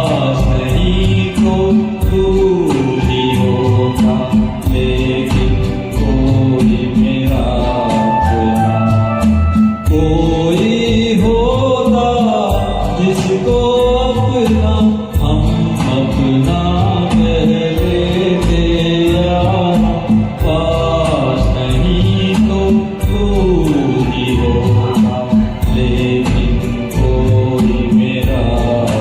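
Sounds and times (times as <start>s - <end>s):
percussion beat: 0.0s - 29.0s.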